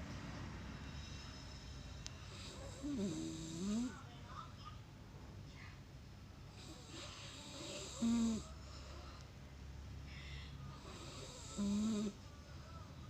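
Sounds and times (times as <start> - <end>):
pet snoring: 2.2 - 4.0, 6.5 - 9.0, 10.8 - 12.2.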